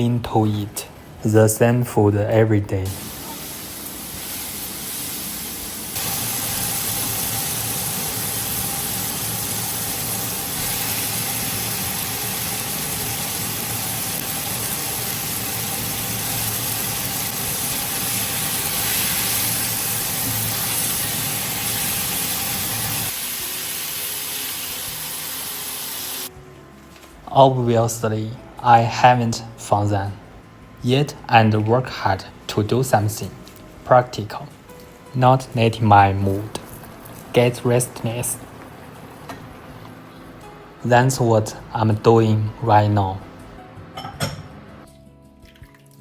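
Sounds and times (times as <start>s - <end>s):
food hissing on stove: 2.9s - 26.3s.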